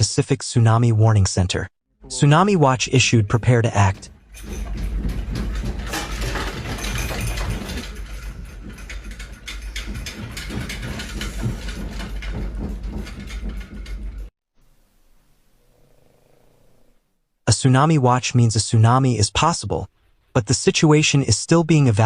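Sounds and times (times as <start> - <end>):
loose objects rattling: 3.7 - 14.3.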